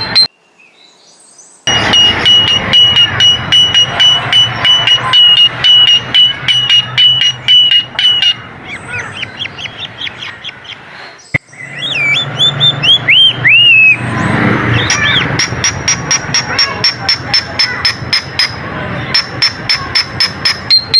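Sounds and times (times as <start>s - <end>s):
bird sharp metallic notes: 1.7s - 20.9s
bird arched whistles: 11.4s - 15.3s.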